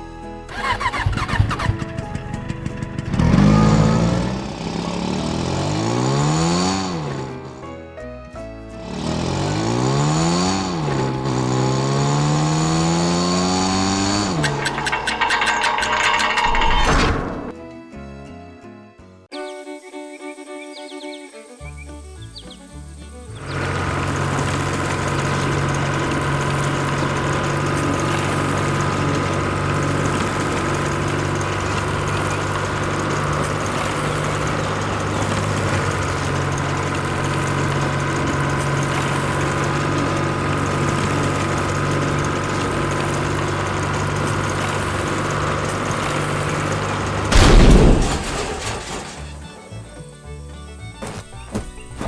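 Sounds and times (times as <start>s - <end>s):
engine running steadily: 0.0s - 7.6s, 8.7s - 17.5s, 21.6s - 52.0s
loud bang: 14.4s - 17.5s, 47.3s - 49.4s.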